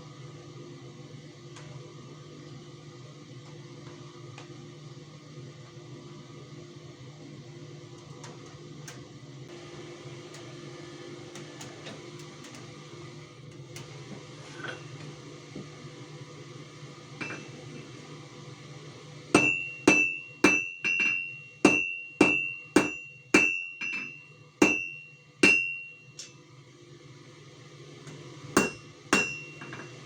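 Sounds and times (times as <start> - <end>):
hammer striking metal on anvil: 19.4 - 26.4, 28.6 - 30.0.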